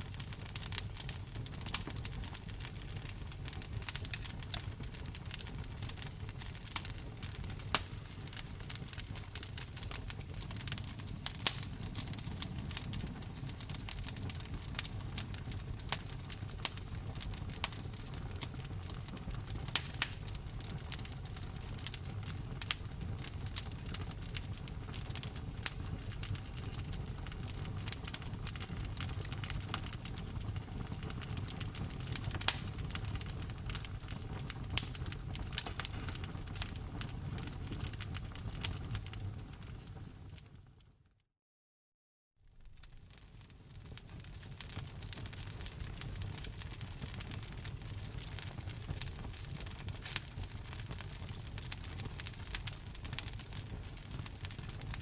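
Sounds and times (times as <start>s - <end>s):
wood fire crackling: 0.0s - 40.6s, 42.6s - 55.0s.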